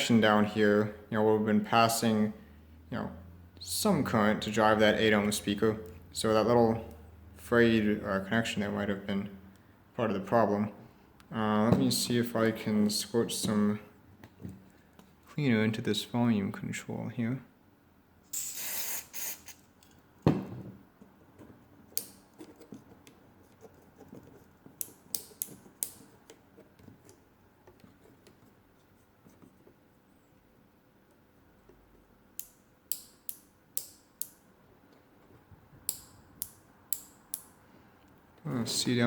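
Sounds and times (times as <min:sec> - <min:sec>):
knock on workbench: 0:20.3 - 0:20.8
sharp clicks of small parts: 0:32.4 - 0:34.4.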